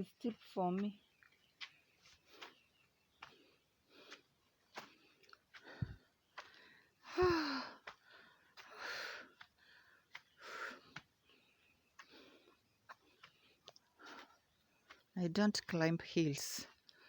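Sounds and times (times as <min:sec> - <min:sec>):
footsteps clicking: 0:00.4 - 0:02.6, 0:03.2 - 0:06.8, 0:07.8 - 0:15.2
woman breathing hard: 0:05.0 - 0:14.4
woman sighing: 0:07.0 - 0:07.8.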